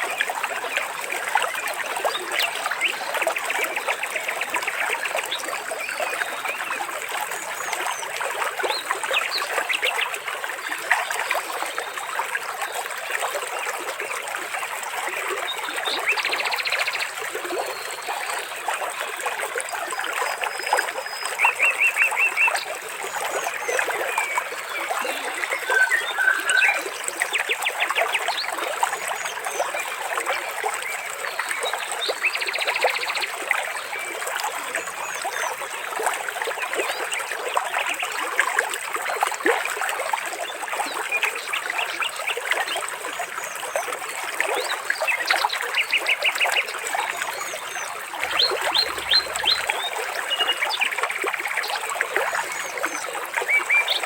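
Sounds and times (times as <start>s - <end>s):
water trickling and splashing: 0.0s - 54.0s
birds calling: 25.0s - 26.9s, 48.2s - 50.4s.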